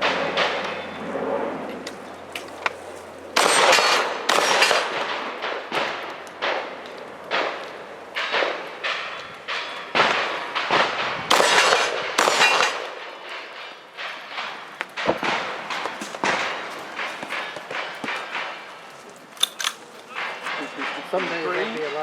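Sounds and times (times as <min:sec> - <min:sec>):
rapid gunshots: 0:03.4 - 0:07.6, 0:08.2 - 0:13.2.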